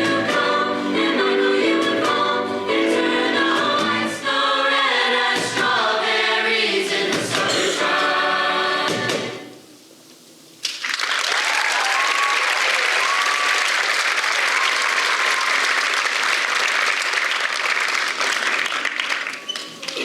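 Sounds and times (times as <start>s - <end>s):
choir singing chord: 0.0s - 9.6s
audience applause: 10.6s - 20.0s.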